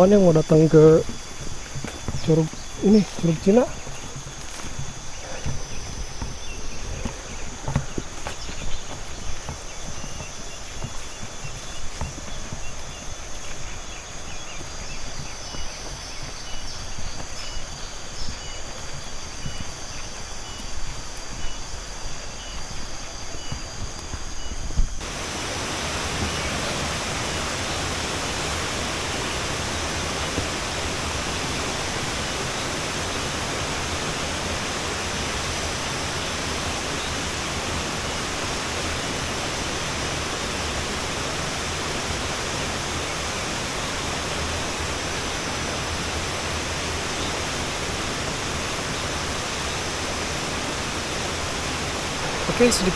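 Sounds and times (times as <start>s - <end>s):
waterfall rushing: 0.0s - 14.7s, 25.0s - 52.9s
faint high chirps: 0.0s - 25.1s
footsteps on dirt trail: 0.0s - 50.4s.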